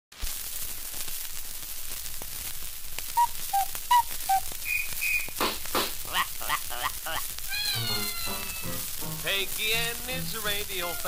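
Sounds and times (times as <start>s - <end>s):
record surface hiss and crackle: 0.1s - 11.0s
whistle-like notes: 3.2s - 5.3s.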